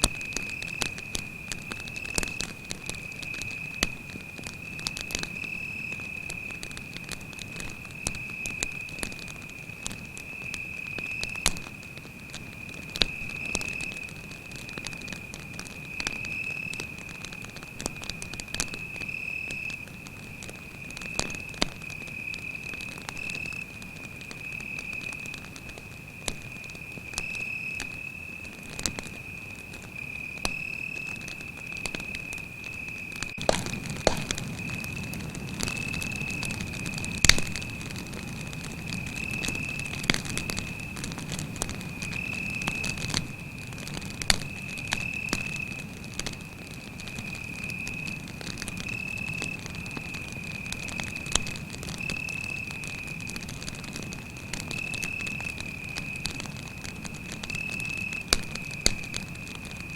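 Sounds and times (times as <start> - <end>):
campfire crackling and popping: 0.0 - 59.9
cricket trilling: 12.3 - 41.0, 41.6 - 59.9.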